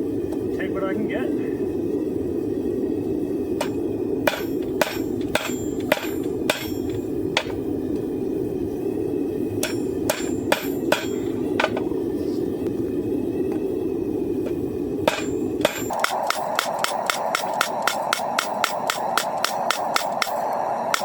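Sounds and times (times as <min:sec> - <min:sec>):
steady rushing noise: 0:00.0 - 0:21.0
hammer striking steel on anvil: 0:03.6 - 0:07.6, 0:09.6 - 0:11.8, 0:15.0 - 0:21.0.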